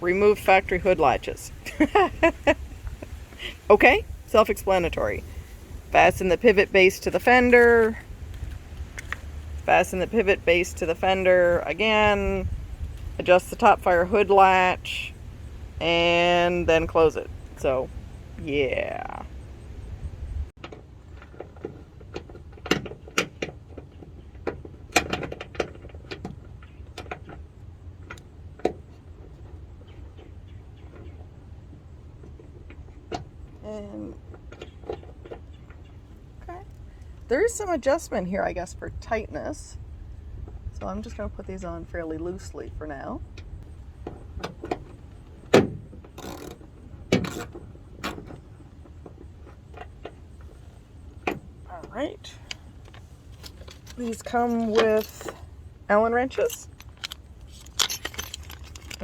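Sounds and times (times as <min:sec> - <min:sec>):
low steady hum: 0:00.0 - 0:22.2
metal hardware clinking: 0:52.5 - 0:59.0.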